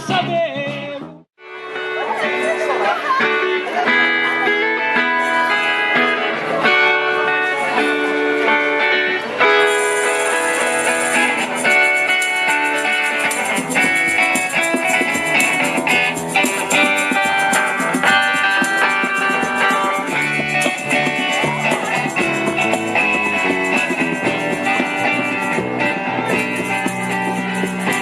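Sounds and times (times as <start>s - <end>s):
plucked and strummed guitar: 0.0s - 28.0s
fast high-pitched percussion rhythm: 9.7s - 28.0s.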